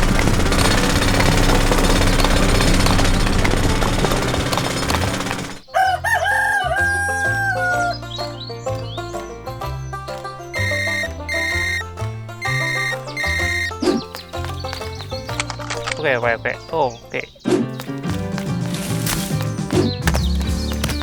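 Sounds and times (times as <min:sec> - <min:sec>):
dense mechanical noise: 0:00.0 - 0:05.6
background music: 0:00.0 - 0:21.0
rooster crowing: 0:05.7 - 0:08.1.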